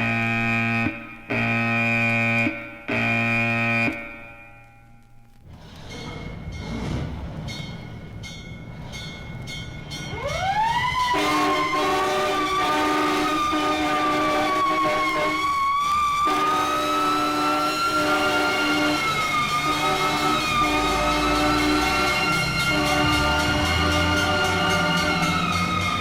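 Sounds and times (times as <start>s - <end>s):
engine rumble: 5.2s - 11.1s
rhythmic clanging bell: 5.8s - 10.3s, 19.1s - 26.0s
mechanical siren wailing: 10.1s - 26.0s.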